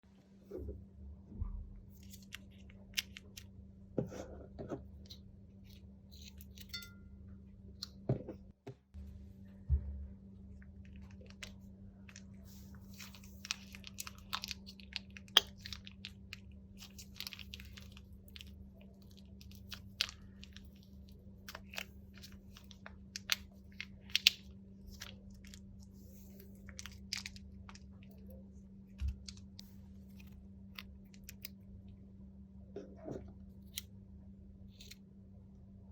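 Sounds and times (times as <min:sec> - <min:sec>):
steady low hum: 0:00.1 - 0:35.9
crunchy slime crackling and popping: 0:12.9 - 0:25.8.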